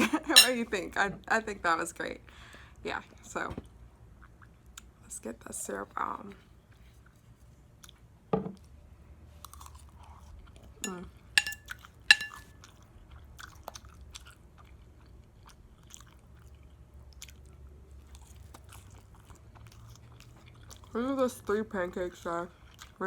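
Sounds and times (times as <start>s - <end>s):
sharp ringing clinks: 0.4s - 0.6s, 10.8s - 12.4s.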